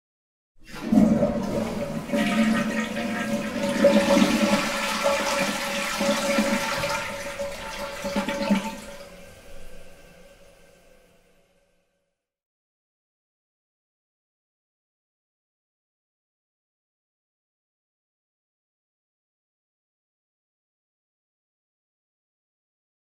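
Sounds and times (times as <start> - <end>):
toilet flushing: 0.6 - 11.2.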